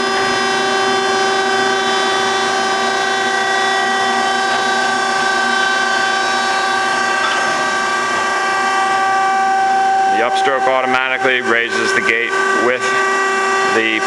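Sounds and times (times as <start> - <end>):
hydraulic motor and pump whine: 0.0 - 14.0.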